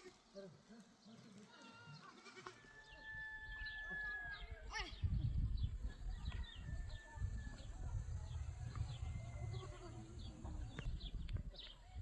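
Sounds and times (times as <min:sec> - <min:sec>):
goats and sheep bleating: 0:01.4 - 0:02.8.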